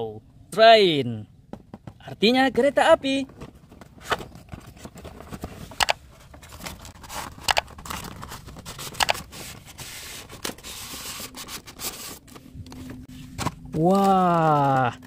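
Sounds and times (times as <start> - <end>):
cardboard and plastic rustling: 3.1 - 15.0.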